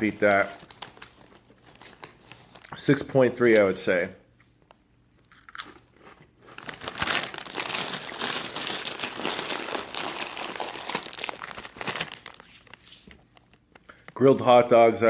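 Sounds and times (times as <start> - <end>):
chip bag crinkling: 0.0 - 3.0, 5.2 - 14.2.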